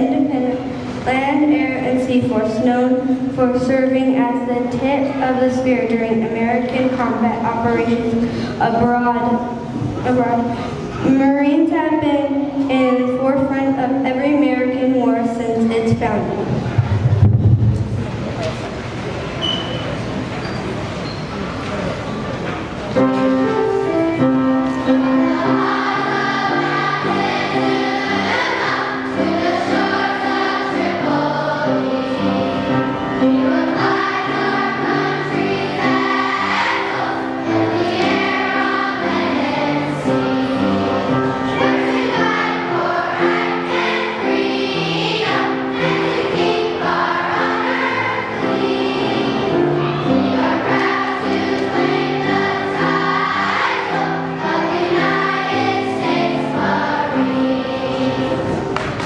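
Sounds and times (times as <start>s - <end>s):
children's choir singing: 0.0s - 13.7s, 22.9s - 59.0s
instrumental accompaniment: 22.9s - 59.0s.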